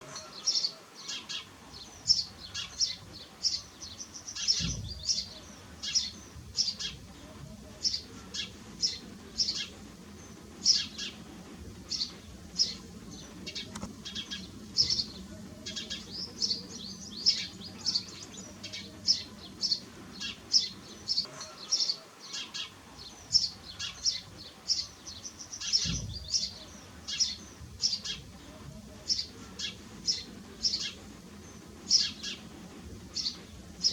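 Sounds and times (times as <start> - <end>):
sparrows chirping: 0.0 - 33.9
low bumps: 25.8 - 26.4.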